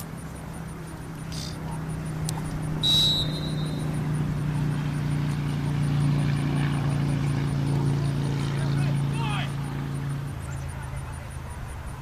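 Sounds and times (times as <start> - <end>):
low engine drone: 0.0 - 12.0
shrill whistle blast: 2.8 - 4.0.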